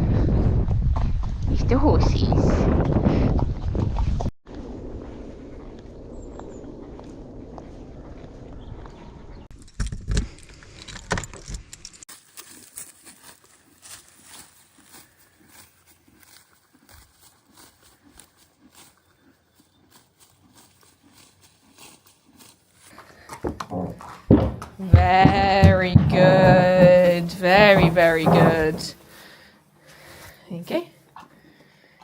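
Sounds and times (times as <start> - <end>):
heavy thuds: 23.4 - 29.0
horse tack jingling: 23.5 - 29.0.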